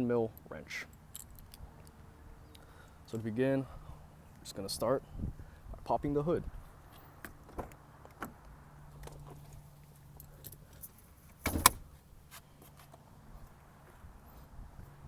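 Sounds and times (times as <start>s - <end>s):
hood release clicks and rattles: 10.2s - 12.0s
hood latch thunk: 11.4s - 11.9s.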